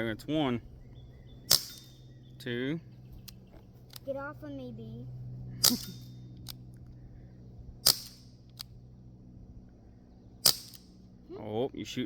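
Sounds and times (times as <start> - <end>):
air pistol shots: 1.5 - 2.0, 5.6 - 6.2, 7.8 - 8.7, 10.4 - 11.0.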